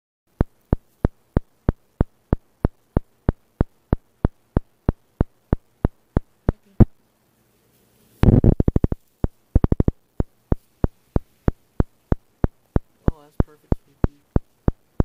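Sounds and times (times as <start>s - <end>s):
sharp ticking clicks: 8.5s - 10.6s, 11.5s - 15.0s.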